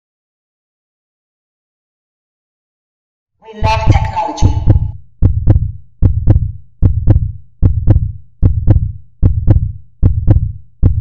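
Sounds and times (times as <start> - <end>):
heartbeat thumps: 3.6 - 11.0.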